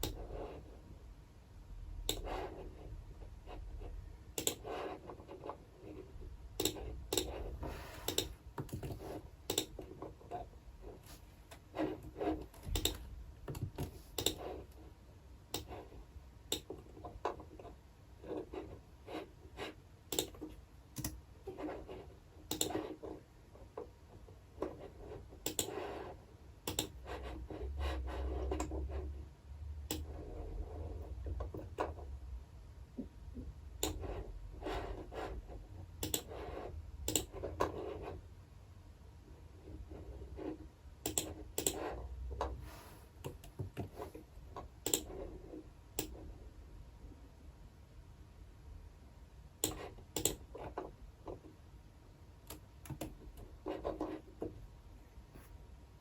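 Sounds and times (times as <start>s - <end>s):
computer keyboard typing: 6.6s - 9.9s, 12.5s - 14.6s, 20.1s - 21.2s, 22.5s - 22.9s, 26.7s - 27.0s, 36.0s - 36.4s, 37.0s - 37.8s, 41.1s - 41.9s, 44.8s - 45.2s, 49.6s - 50.8s, 52.5s - 54.2s.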